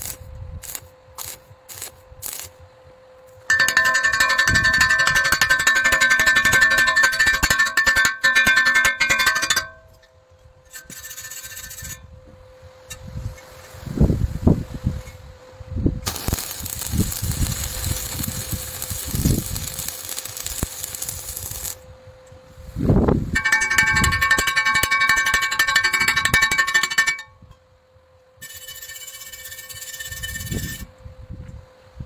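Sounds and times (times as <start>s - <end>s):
welding arc crackling and hissing: 0.0s - 2.7s, 16.0s - 21.8s.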